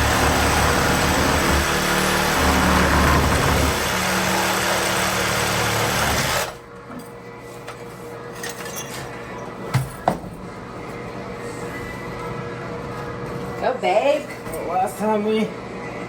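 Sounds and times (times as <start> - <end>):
power tool running: 0.0 - 6.6.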